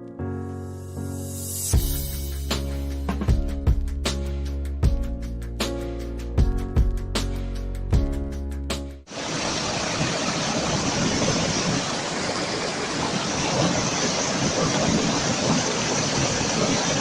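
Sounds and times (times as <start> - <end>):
steady rushing noise: 9.1 - 17.0.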